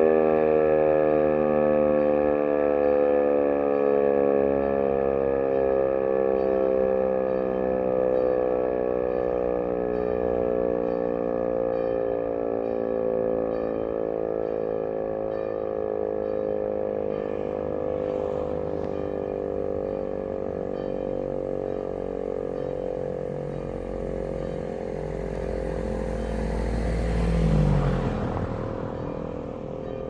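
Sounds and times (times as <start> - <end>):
rotary siren tone: 0.0 - 30.0.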